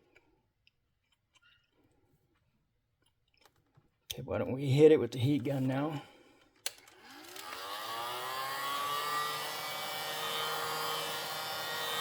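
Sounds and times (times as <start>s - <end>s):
heat gun fan motor whine: 6.8s - 12.0s.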